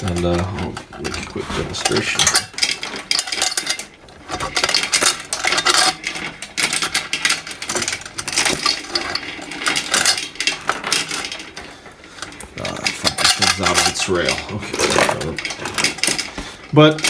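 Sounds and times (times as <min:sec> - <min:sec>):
chain rattling and clinking: 0:00.0 - 0:17.0.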